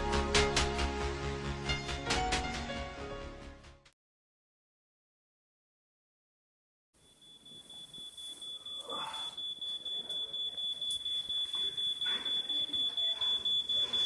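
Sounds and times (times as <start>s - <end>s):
smoke alarm shrill tone: 7.0s - 14.0s.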